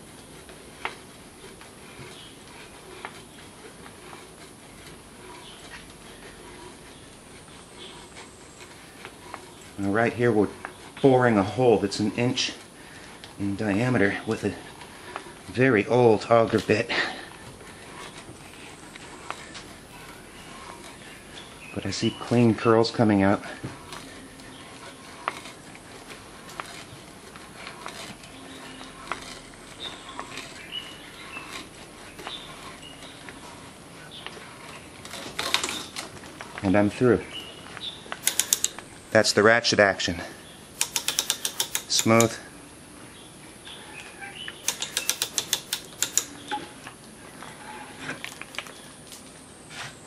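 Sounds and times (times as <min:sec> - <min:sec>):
hand brace boring through wood: 0:00.0 - 0:42.6, 0:43.7 - 0:49.2
hand brace ratchet clicking: 0:25.1 - 0:30.6, 0:35.0 - 0:36.1, 0:38.1 - 0:38.9, 0:40.7 - 0:42.4, 0:44.6 - 0:46.5.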